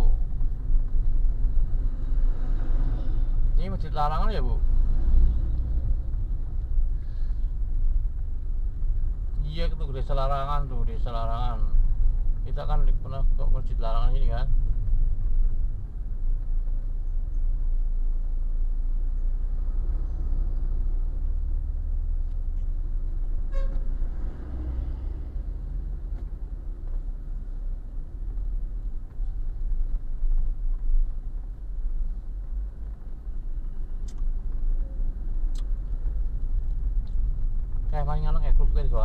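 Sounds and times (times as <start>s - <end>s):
car road and engine rumble: 0.0s - 39.0s
car horn toot: 23.5s - 23.9s.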